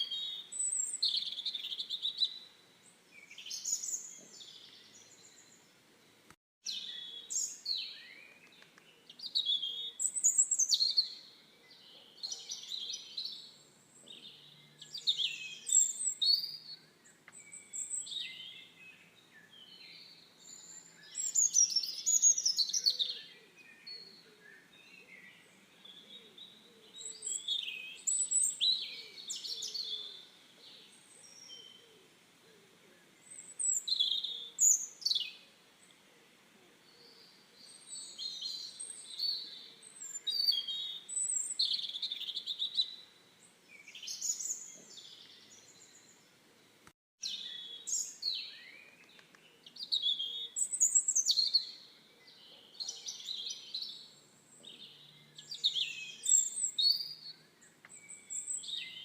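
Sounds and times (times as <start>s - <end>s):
faint outdoor background: 0.0s - 59.0s
songbirds singing: 0.0s - 59.0s.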